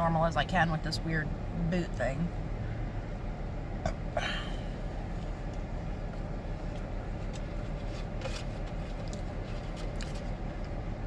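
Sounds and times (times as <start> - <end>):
idling car hum: 0.0 - 11.0
rustle: 5.2 - 10.8.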